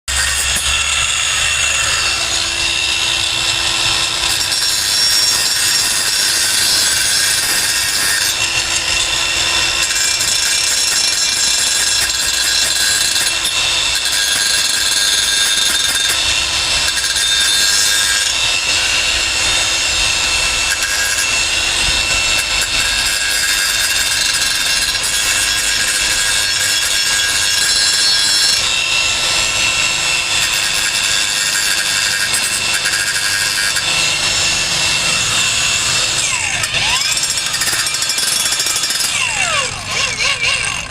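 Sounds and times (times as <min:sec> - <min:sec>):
angle grinder whining and grinding: 0:00.0 - 0:40.9.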